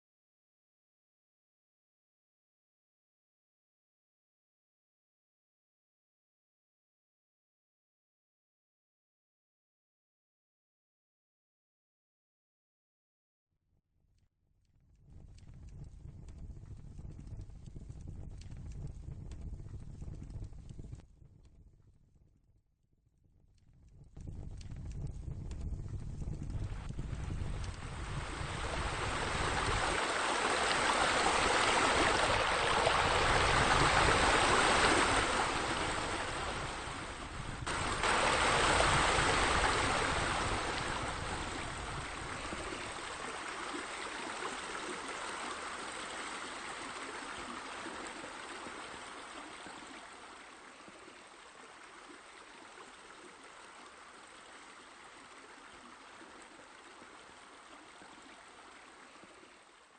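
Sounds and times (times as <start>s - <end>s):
running water rushing: 26.4s - 59.9s.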